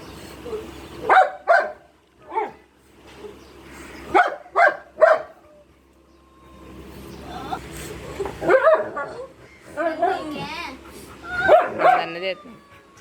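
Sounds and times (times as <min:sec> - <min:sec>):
dog barking: 0:01.0 - 0:02.6, 0:04.1 - 0:05.4, 0:08.4 - 0:10.2, 0:11.4 - 0:12.2.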